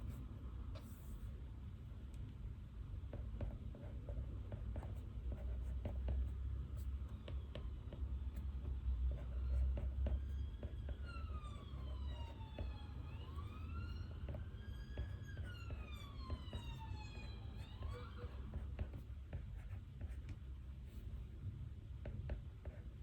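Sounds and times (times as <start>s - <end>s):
siren wailing: 10.3s - 18.5s.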